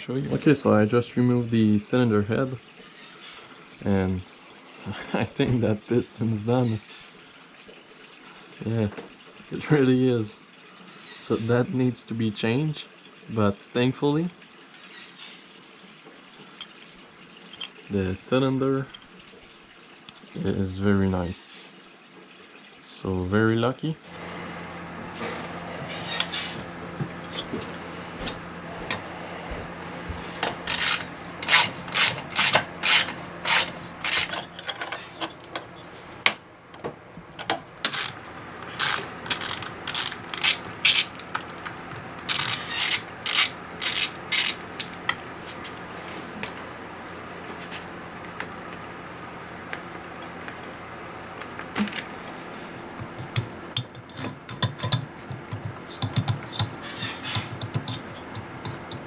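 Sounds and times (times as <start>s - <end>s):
light ticks and handling noise: 24.1s - 36.8s, 37.4s - 46.7s, 51.4s - 59.0s
ratchet wrench clicking: 30.4s - 34.8s, 37.9s - 45.5s.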